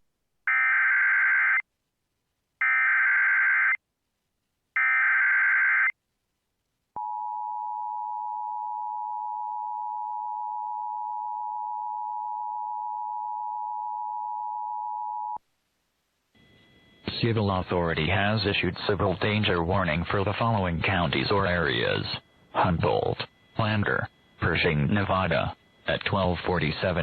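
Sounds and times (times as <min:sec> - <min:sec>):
steady two-tone attention signal: 0:16.4 - 0:27.0.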